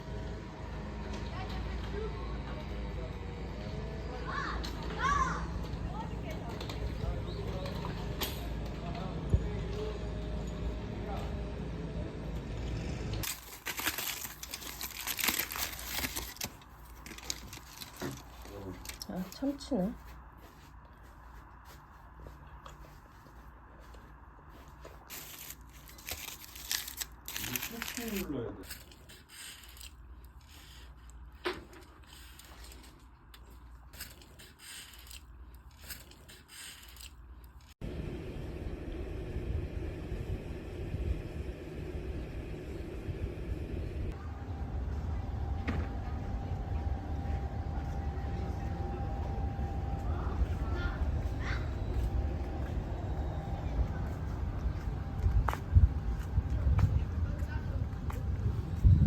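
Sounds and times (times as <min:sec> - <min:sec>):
plastic wrapper crinkling: 0:13.2 - 0:19.4, 0:25.0 - 0:30.9, 0:34.0 - 0:37.7
scraping and rustling: 0:13.2 - 0:37.8
low rumble: 0:37.8 - 0:59.0.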